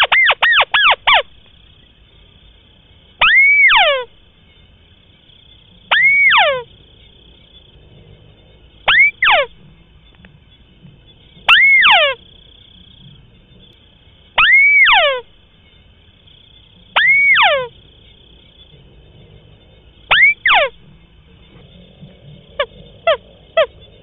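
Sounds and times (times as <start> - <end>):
crake calling: 0.0 - 24.0.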